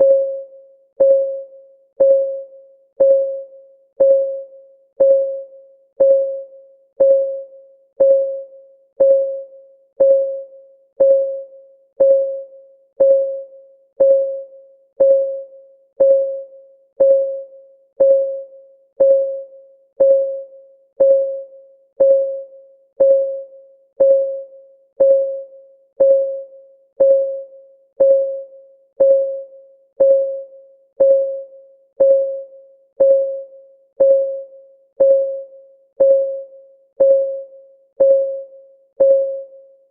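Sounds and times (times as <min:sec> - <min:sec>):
timer ticking: 0:03.0 - 0:03.4, 0:04.0 - 0:04.4, 0:05.0 - 0:05.4, 0:06.0 - 0:06.4, 0:07.0 - 0:07.4, 0:08.0 - 0:08.4, 0:09.0 - 0:09.4, 0:10.0 - 0:10.4, 0:11.0 - 0:11.4, 0:12.0 - 0:12.4, 0:13.0 - 0:13.4, 0:14.0 - 0:14.4, 0:15.0 - 0:15.4, 0:16.0 - 0:16.4, 0:17.0 - 0:17.4, 0:18.0 - 0:18.4, 0:19.0 - 0:19.4, 0:20.0 - 0:20.4, 0:21.0 - 0:21.4, 0:22.0 - 0:22.4, 0:23.0 - 0:23.4, 0:24.0 - 0:24.4, 0:25.0 - 0:25.4, 0:26.0 - 0:26.4, 0:27.0 - 0:27.4, 0:28.0 - 0:28.4, 0:29.0 - 0:29.4, 0:30.0 - 0:30.4, 0:31.0 - 0:31.4, 0:32.0 - 0:32.4, 0:33.0 - 0:33.4, 0:34.0 - 0:34.4, 0:35.0 - 0:35.4, 0:36.0 - 0:36.4, 0:37.0 - 0:37.4, 0:38.0 - 0:38.4, 0:39.0 - 0:39.4.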